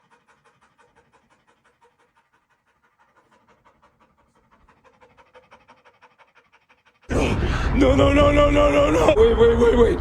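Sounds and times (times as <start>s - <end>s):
faint rapid panting: 0.0s - 7.1s.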